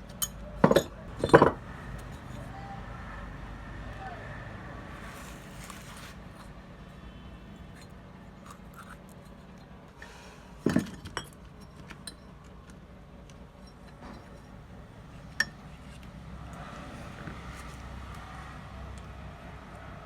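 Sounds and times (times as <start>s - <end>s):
metal tools clinking and knocking: 0.0s - 2.4s, 10.6s - 14.6s, 15.3s - 16.0s.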